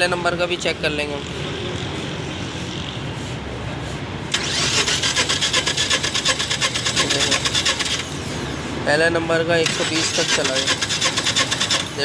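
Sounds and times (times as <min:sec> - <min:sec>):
engine cranking on starter motor: 0:04.3 - 0:08.3, 0:09.6 - 0:12.0.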